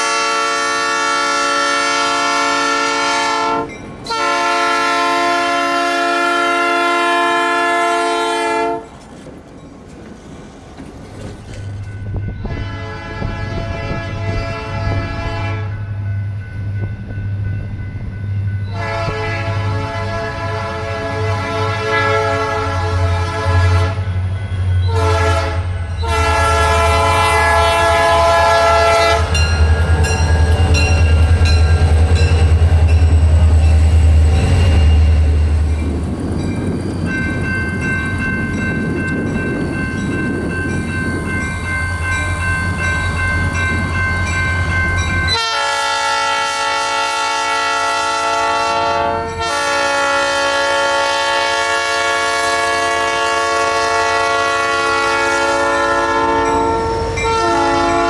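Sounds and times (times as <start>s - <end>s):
locomotive horn blasts: 0.0s - 8.9s, 12.4s - 15.8s, 18.7s - 24.2s, 24.8s - 33.0s, 45.3s - 58.0s
train rumble: 0.0s - 58.0s
wheels clacking on rail joints: 8.8s - 12.6s.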